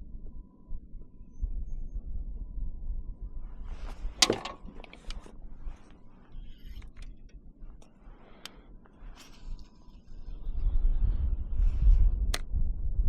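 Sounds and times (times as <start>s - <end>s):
wind rumble on microphone: 0.0s - 13.0s.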